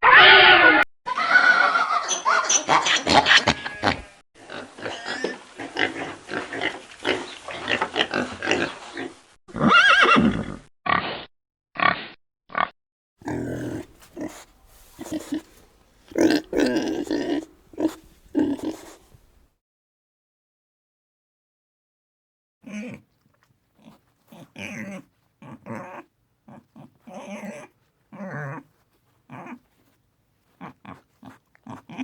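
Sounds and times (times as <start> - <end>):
pig high call: 0.0 - 4.1, 13.2 - 19.4, 22.7 - 23.0
pigs grunting: 2.7 - 9.7, 13.2 - 19.4, 22.7 - 23.1, 23.8 - 32.0.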